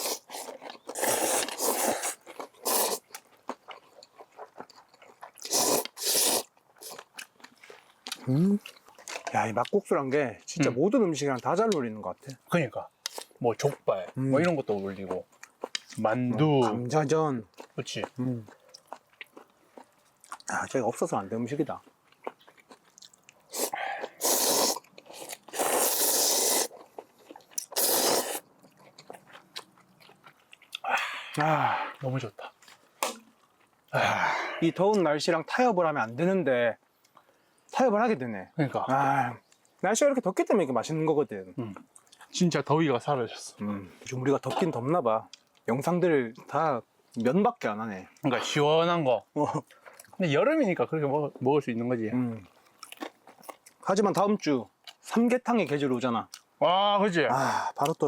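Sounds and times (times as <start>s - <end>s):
noodles slurped: 0.0s - 9.2s, 22.7s - 29.5s
chewing clicks: 0.4s - 9.8s, 13.0s - 16.0s, 17.5s - 20.5s, 21.8s - 31.5s, 37.0s - 37.3s, 52.4s - 53.8s, 55.6s - 56.5s.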